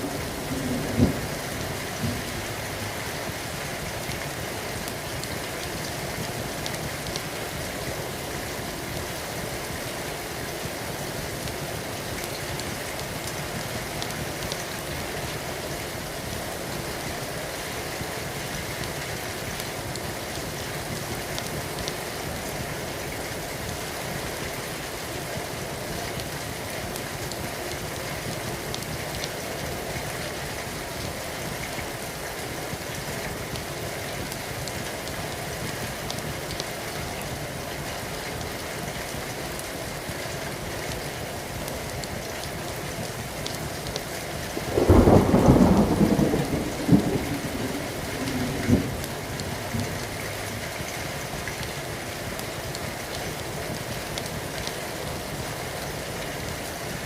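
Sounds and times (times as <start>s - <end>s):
thunderclap rumbling: 0.0s - 2.6s, 44.6s - 50.1s
steady rain falling: 0.0s - 57.0s.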